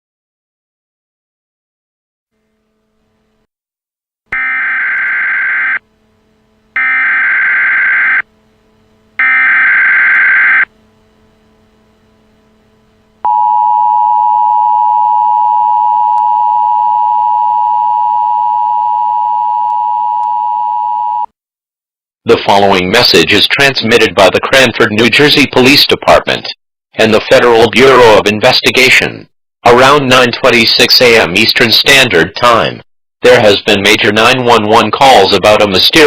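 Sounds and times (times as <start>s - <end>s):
steady attention tone: 4.3s - 21.3s.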